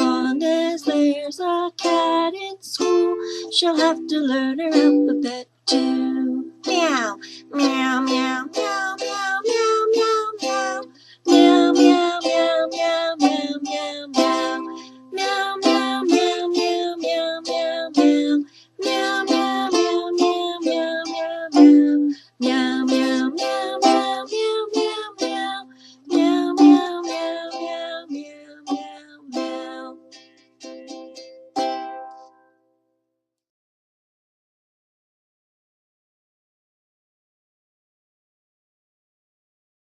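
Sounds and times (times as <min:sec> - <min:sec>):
woman singing: 0:00.0 - 0:30.2
ukulele strumming: 0:00.0 - 0:32.5.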